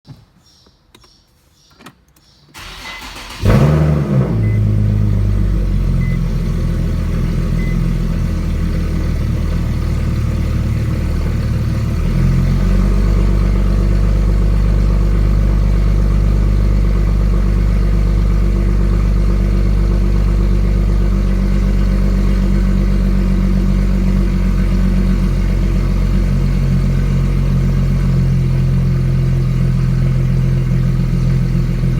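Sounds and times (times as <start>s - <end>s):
engine starter cranking: 2.1s - 5.0s
car engine idling: 2.5s - 31.9s.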